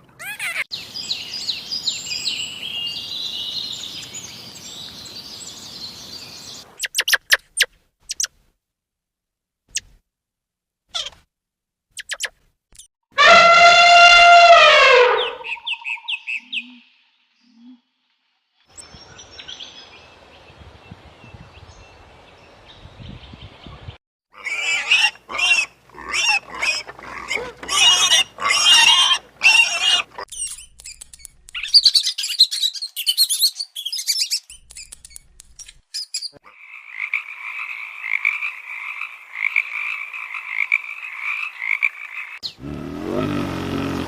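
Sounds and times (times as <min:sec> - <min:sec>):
loud repeated animal calls: 0:13.2 - 0:16.8, 0:24.4 - 0:30.3
high chirping: 0:15.2 - 0:16.8
frog croaking: 0:36.4 - 0:42.4.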